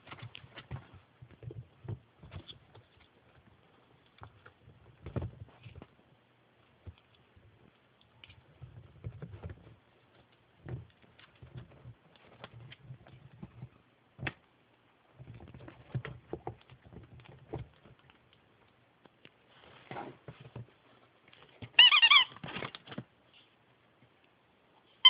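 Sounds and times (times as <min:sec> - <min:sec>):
ferret playing with toy: 0:21.4 - 0:23.0.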